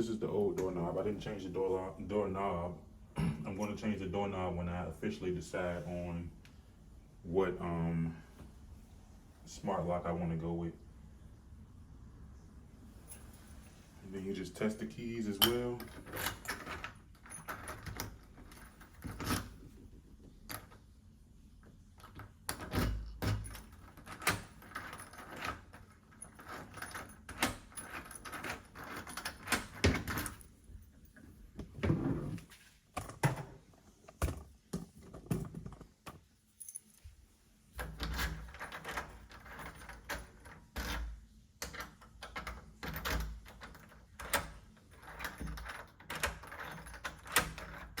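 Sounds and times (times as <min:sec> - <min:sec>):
keys jangling: 0:15.4 - 0:19.6, 0:22.0 - 0:31.0, 0:36.5 - 0:37.1, 0:41.7 - 0:48.0.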